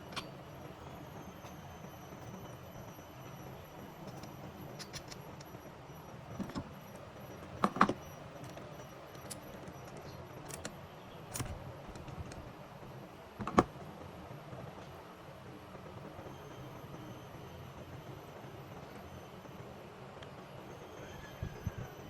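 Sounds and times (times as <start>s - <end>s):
clicks and knocks of tools: 0.0s - 0.4s, 4.0s - 5.6s, 6.4s - 6.7s, 7.6s - 12.5s, 13.4s - 13.7s
steady background noise: 0.0s - 22.0s.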